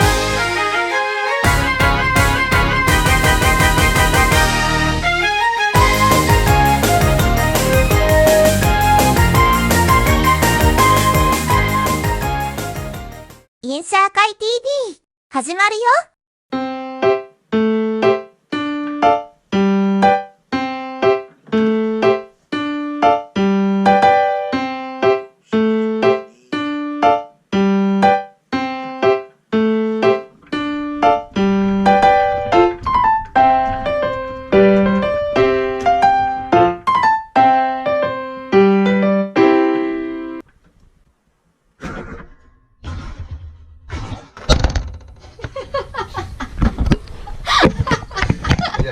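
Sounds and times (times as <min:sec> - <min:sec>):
bouncy piano music: 0:00.0 - 0:13.5, 0:16.5 - 0:40.4.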